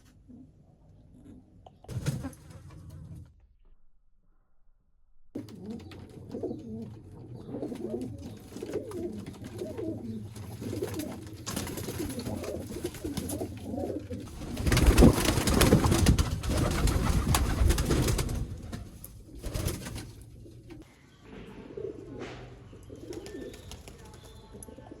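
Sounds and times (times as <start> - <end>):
pigeons cooing: 5.4 - 25.0.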